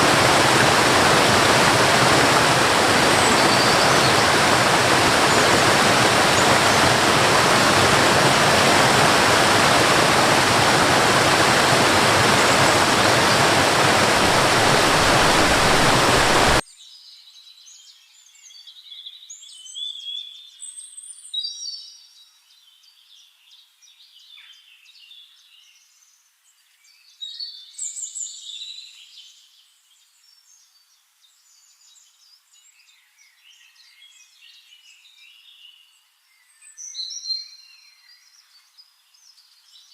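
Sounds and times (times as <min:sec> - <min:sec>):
rushing water: 0:00.0 - 0:16.6
birds singing and chirping: 0:00.1 - 0:16.6.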